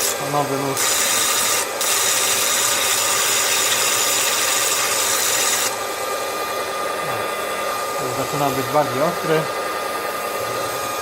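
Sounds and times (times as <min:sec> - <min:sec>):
blade grinding hiss: 0:00.0 - 0:06.3
electric motor whine: 0:00.0 - 0:11.0.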